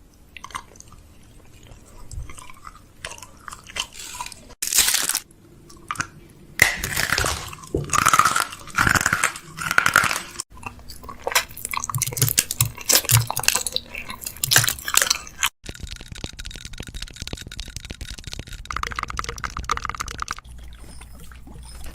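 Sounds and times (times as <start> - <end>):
person chewing crunchy fries: 0.3 - 21.9.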